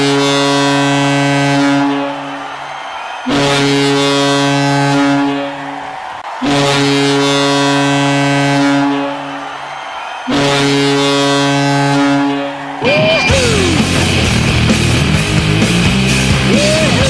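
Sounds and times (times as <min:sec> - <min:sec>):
deep air horn blasts: 0:00.0 - 0:13.8
rising and falling pitched sound: 0:12.8 - 0:17.0.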